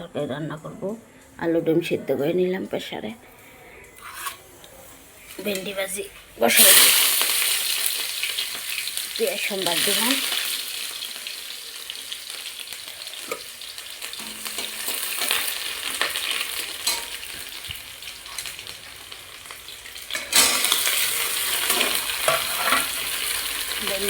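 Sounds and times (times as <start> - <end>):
onions sizzling in a pan: 1.4 - 24.0
spatula scraping a pan: 4.0 - 6.4, 20.1 - 23.7.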